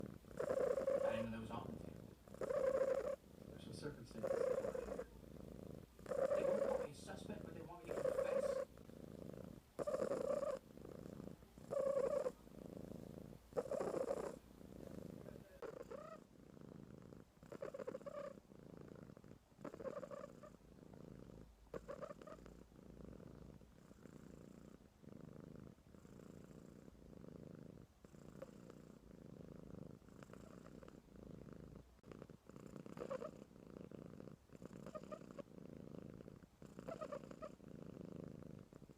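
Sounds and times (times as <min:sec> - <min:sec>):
kitten purring and snoring: 0:00.0 - 0:38.9.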